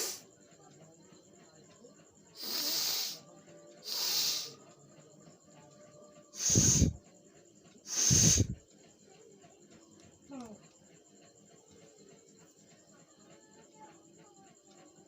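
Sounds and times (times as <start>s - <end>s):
hissing breaths through nose: 0.0s - 0.2s, 2.3s - 4.8s, 6.4s - 7.1s, 7.8s - 8.7s
person blowing nose: 0.0s - 0.2s, 2.4s - 3.2s, 3.9s - 4.5s, 6.4s - 7.0s, 7.9s - 8.6s.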